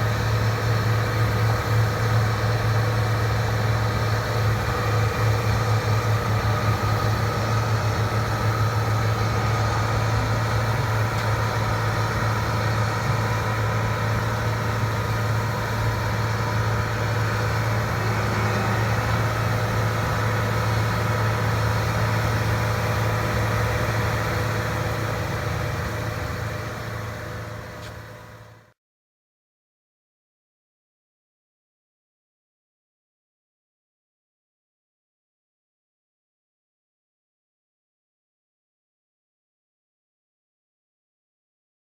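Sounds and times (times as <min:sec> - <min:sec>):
diesel engine running: 0:00.0 - 0:28.7.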